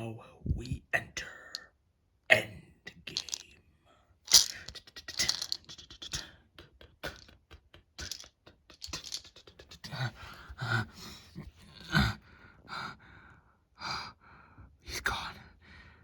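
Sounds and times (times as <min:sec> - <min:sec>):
quick sharp clicks and rustles: 0:04.3 - 0:06.3.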